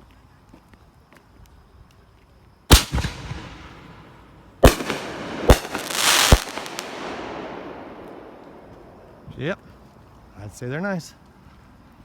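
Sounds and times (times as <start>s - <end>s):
firework bangs: 2.7s - 9.4s
firework crackle: 2.7s - 9.4s
firework launch report: 2.7s - 9.7s.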